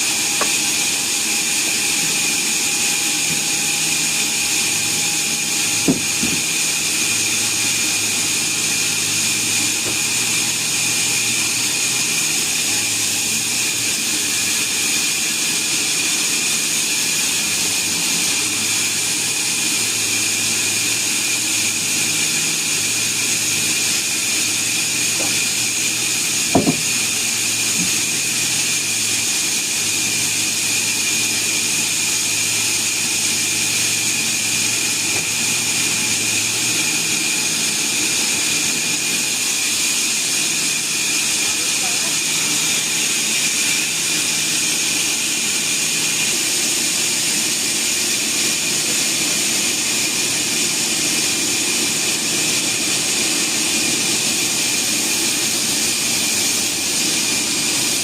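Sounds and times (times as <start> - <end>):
sawmill saw whining: 0.0 - 58.0
short knocks: 26.5 - 26.9.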